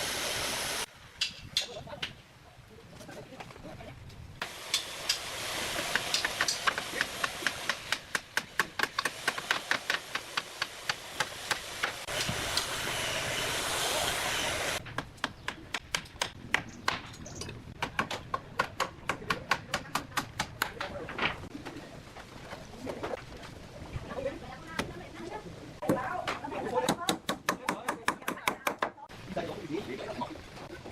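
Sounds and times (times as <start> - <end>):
hammer strikes on wood: 5.8 - 12.7, 17.8 - 21.0.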